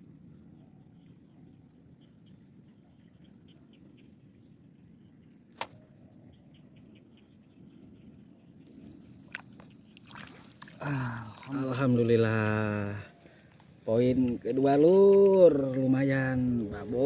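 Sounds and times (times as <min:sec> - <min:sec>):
sharp click: 0:05.5 - 0:05.8.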